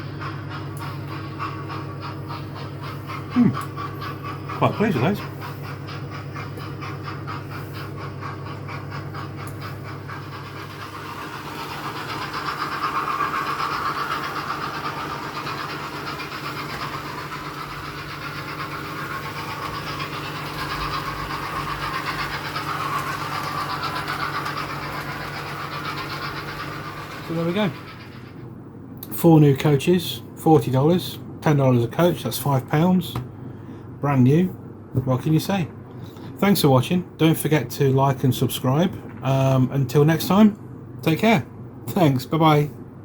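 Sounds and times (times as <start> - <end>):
model train motor whirring: 0.0 - 28.5
wheels running on track: 0.0 - 33.4, 34.1 - 41.4.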